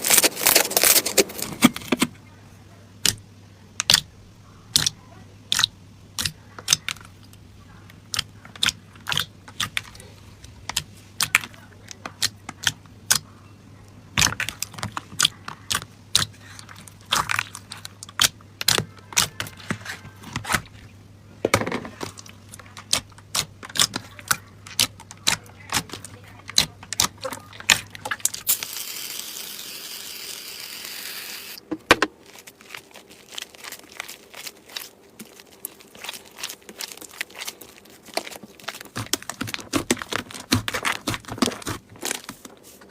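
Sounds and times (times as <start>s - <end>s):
slime clicking and popping: 3.8s - 4.1s, 4.7s - 7.4s, 8.0s - 10.0s, 14.2s - 19.8s, 22.2s - 28.7s, 32.4s - 42.2s.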